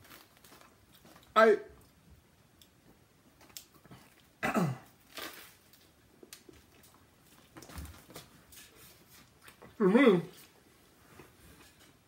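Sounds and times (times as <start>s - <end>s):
man coughing: 4.4s - 4.9s.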